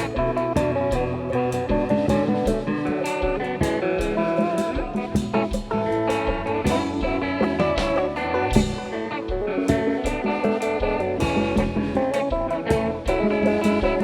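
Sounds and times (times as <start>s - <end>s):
band playing guitar over beat: 0.0s - 14.0s.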